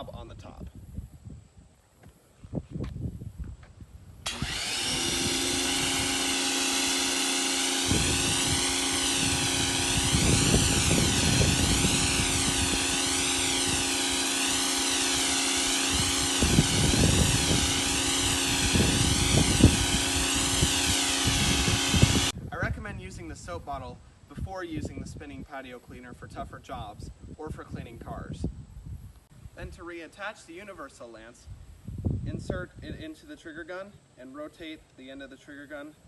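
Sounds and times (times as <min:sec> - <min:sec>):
pressure washer motor whine: 0:04.2 - 0:22.3
water spraying: 0:04.3 - 0:22.3.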